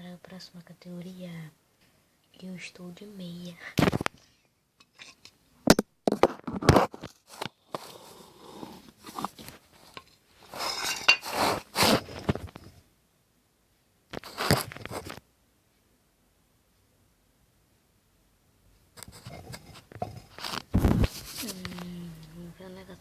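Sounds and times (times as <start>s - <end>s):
crunchy crackling rustles: 3.8s - 4.4s, 14.1s - 15.3s, 19.0s - 22.0s.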